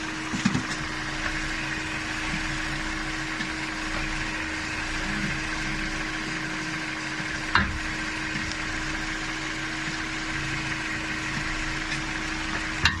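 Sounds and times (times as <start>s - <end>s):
car engine running: 0.0s - 13.0s
drive shaft clunk: 7.2s - 13.0s.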